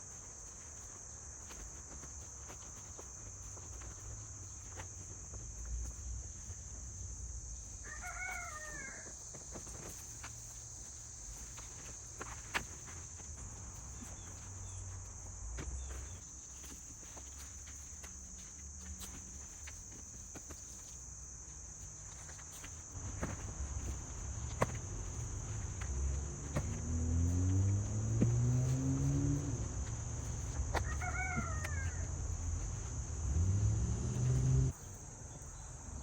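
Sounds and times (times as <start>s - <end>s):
insects trilling: 0.0s - 36.0s
rooster crowing: 7.8s - 9.2s, 27.8s - 34.7s.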